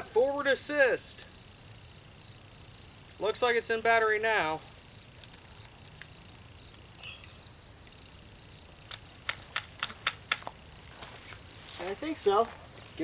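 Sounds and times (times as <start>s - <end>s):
insects trilling: 0.0s - 13.0s
sharp clicks: 8.9s - 10.6s.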